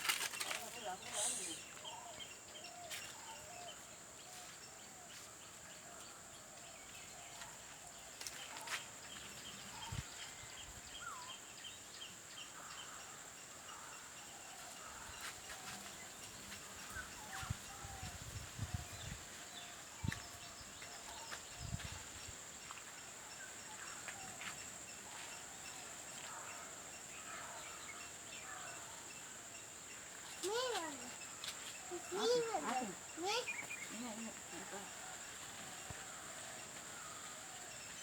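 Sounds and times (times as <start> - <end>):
steady high hiss: 0.0 - 1.9.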